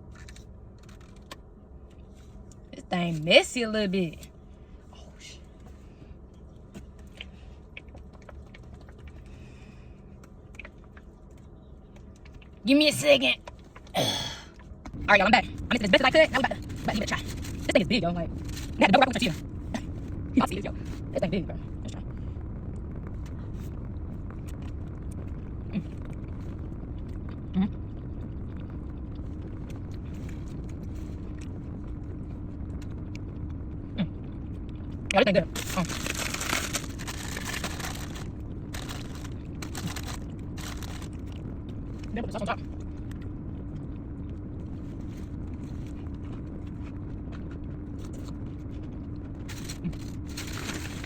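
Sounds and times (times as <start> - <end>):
low background hum: 0.0 - 51.0
steady low rumble: 0.0 - 51.0
person chewing food: 6.7 - 9.4.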